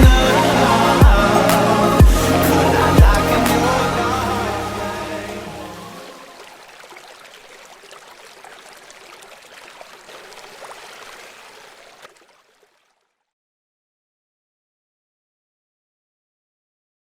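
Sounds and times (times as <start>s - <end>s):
running water splashing: 0.0s - 13.2s.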